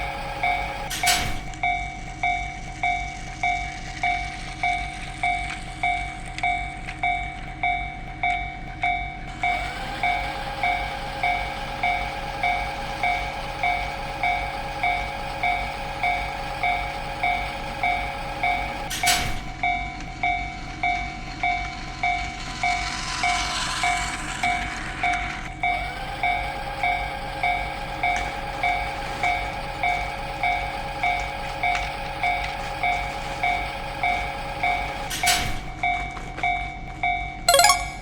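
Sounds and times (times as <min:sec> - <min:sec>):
passing train rushing: 0:20.5 - 0:25.6
railroad crossing bell ringing: 0:37.5 - 0:38.0.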